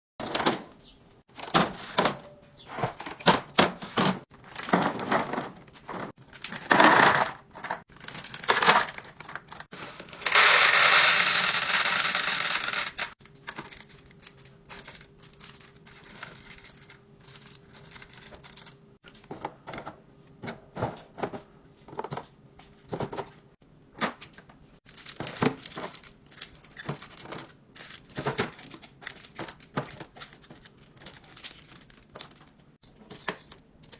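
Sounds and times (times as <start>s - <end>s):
plastic packaging crinkling: 7.9s - 18.8s, 24.8s - 32.7s.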